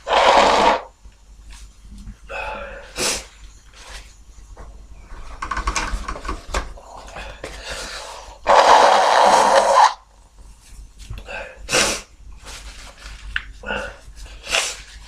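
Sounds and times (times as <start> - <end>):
nose blowing: 0.0 - 0.9, 7.8 - 10.0.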